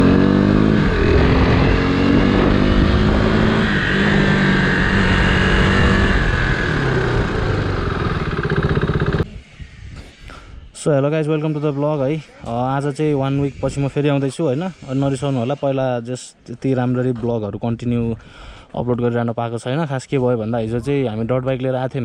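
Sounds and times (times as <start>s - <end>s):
motorcycle engine revving: 0.0s - 9.5s.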